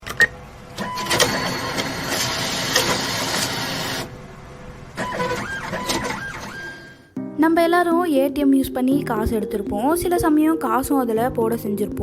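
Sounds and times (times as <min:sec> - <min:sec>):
atm cash counting whir: 0:00.0 - 0:07.1.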